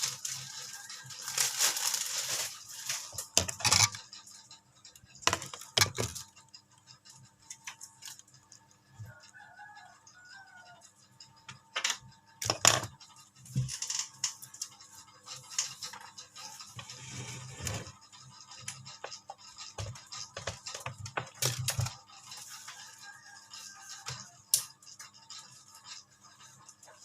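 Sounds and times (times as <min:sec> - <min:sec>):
packaging being handled: 0:00.0 - 0:03.9.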